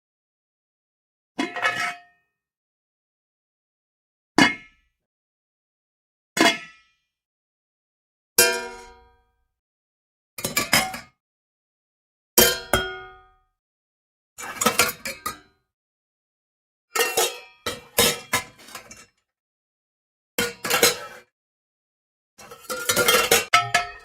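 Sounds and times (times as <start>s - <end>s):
pots and pans clanking: 17.0s - 19.0s, 20.5s - 21.2s, 22.4s - 24.0s.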